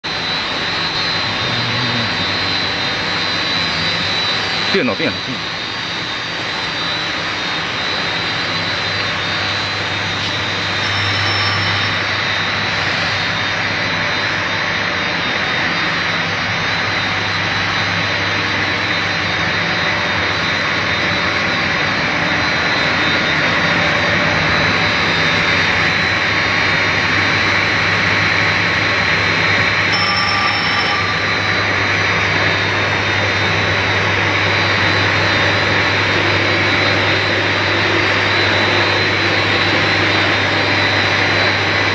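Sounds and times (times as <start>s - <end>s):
machine rushing noise: 0.0s - 10.8s
low hum: 0.1s - 5.3s
faint high whine: 0.1s - 41.9s.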